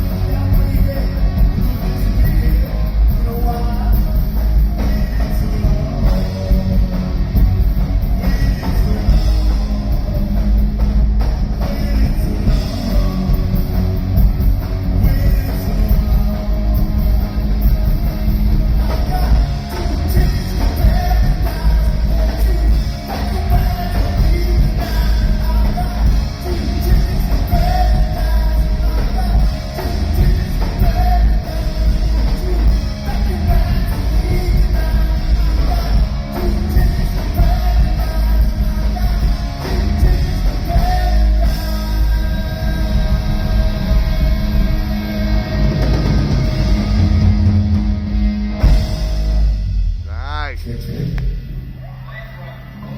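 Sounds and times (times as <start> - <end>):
loud rock band: 0.0 - 52.9
person singing: 18.6 - 47.1.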